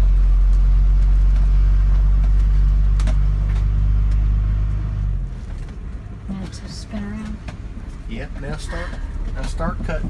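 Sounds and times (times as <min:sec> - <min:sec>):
engine running under throttle: 0:00.0 - 0:05.7.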